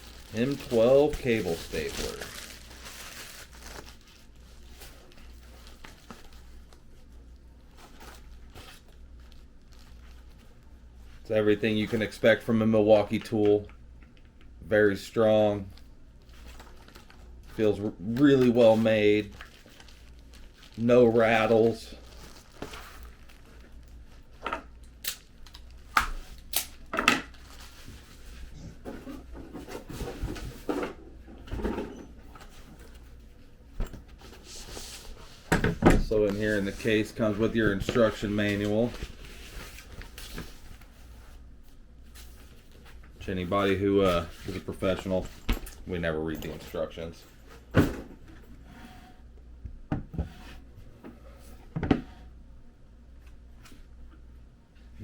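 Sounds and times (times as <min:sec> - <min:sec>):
low steady hum: 0:00.0 - 0:55.0.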